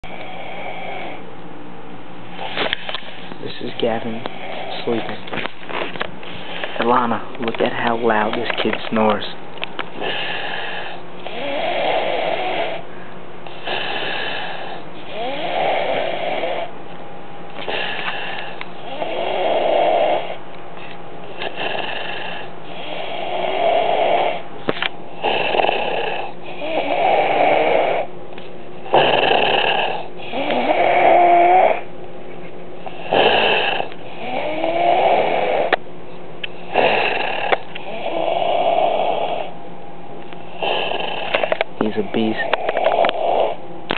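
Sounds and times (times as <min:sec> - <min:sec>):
child snoring: 0:00.0 - 0:01.2, 0:04.0 - 0:05.2, 0:10.0 - 0:12.8, 0:13.5 - 0:16.7, 0:17.6 - 0:20.4, 0:21.3 - 0:24.4, 0:25.2 - 0:28.1, 0:28.8 - 0:31.9, 0:32.8 - 0:35.8, 0:36.6 - 0:39.5, 0:40.5 - 0:41.6, 0:42.3 - 0:43.6
child breathing: 0:17.6 - 0:18.6.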